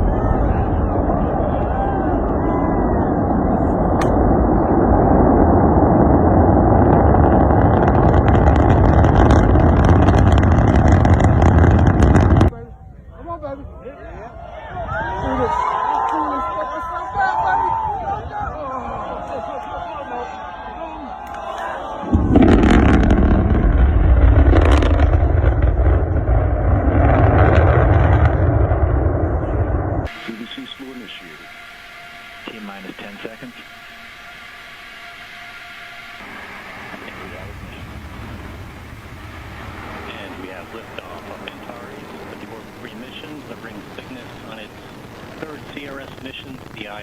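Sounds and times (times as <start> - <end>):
rocket roaring: 0.0 - 12.5, 21.4 - 47.0
sharp crackling: 0.0 - 12.5, 22.1 - 47.0.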